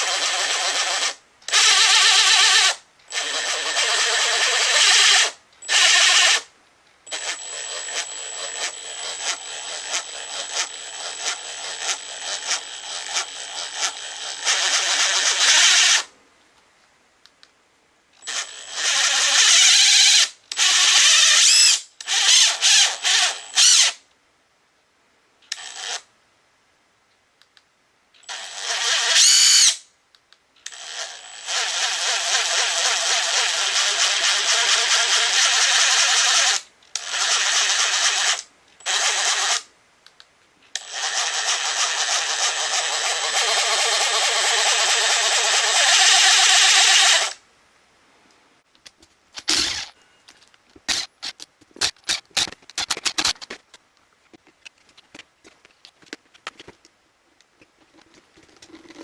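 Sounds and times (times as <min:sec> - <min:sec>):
impact driver running in bursts: 0:00.0 - 0:06.4, 0:07.1 - 0:16.0, 0:49.4 - 0:49.9, 0:50.8 - 0:53.6.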